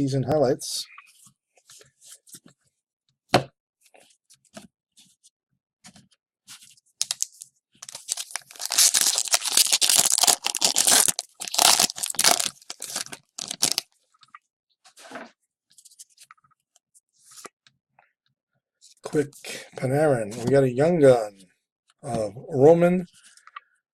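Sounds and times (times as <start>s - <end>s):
foil wrapper crinkling and tearing: 7.0s - 13.9s.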